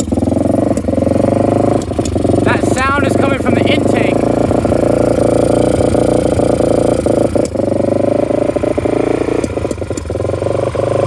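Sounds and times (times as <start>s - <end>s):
motorcycle engine fast idle: 0.0s - 11.0s
strange intake noise: 0.7s - 7.6s.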